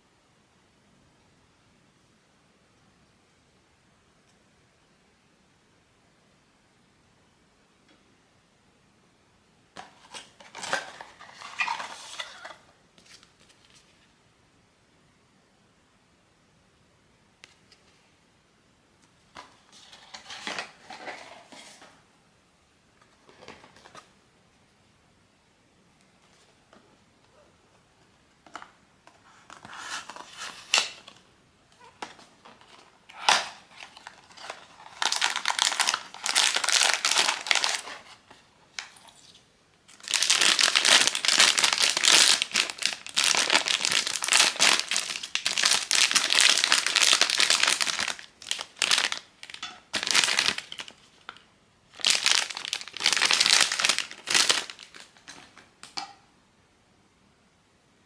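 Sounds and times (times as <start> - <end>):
packaging crinkling: 31.8 - 39.2, 39.9 - 55.6.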